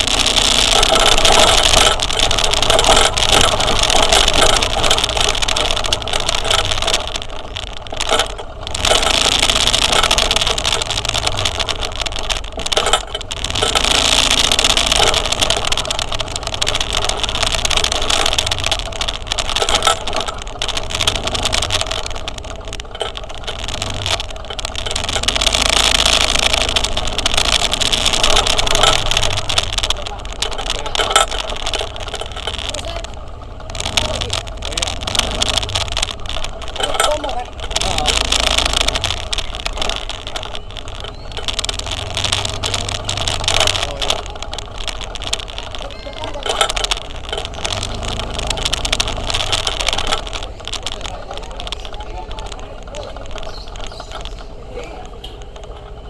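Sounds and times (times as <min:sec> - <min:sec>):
motor scooter engine and road noise: 0:00.0 - 0:56.0.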